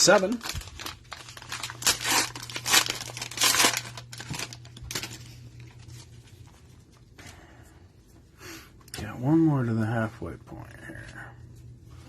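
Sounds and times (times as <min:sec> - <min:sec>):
plastic wrapper tearing and crinkling: 0:00.0 - 0:06.2.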